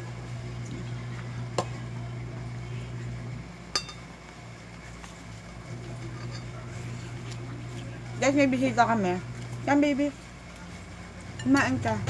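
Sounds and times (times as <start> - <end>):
cutlery clinking against plate: 3.8 - 4.1, 6.0 - 6.7.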